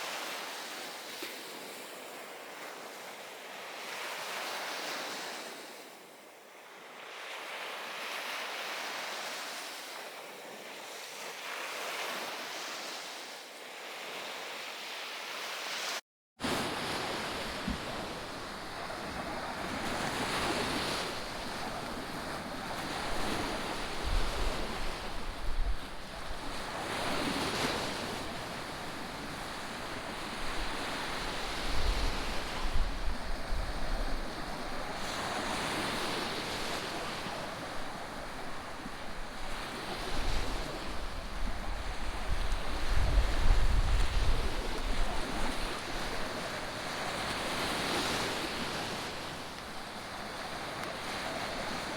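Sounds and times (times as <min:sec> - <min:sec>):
sea waves washing on beach: 0:00.0 - 0:51.9
wind buffeting microphone: 0:41.1 - 0:45.7.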